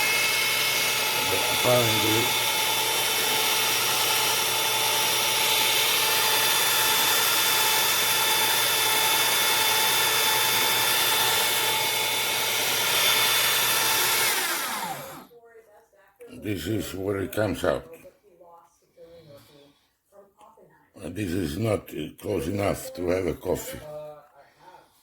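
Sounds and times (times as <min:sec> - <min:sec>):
coffee grinder grinding beans: 0:00.0 - 0:15.3
grinder motor winding down: 0:00.0 - 0:15.3.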